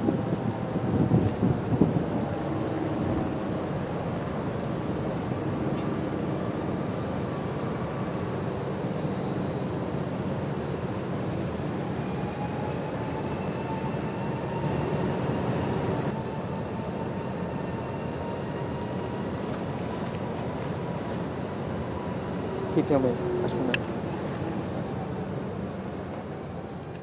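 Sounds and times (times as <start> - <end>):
distant siren rising in pitch: 0.0 - 8.6, 10.9 - 19.4.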